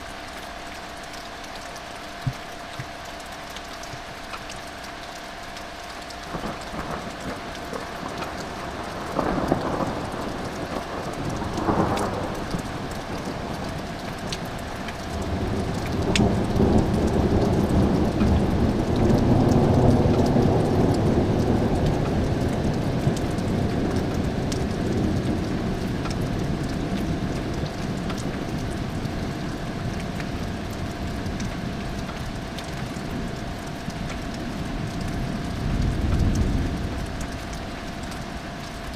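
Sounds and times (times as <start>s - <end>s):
steady rain: 0.0s - 38.9s
rolling thunder rumble: 6.3s - 33.5s, 34.4s - 37.8s.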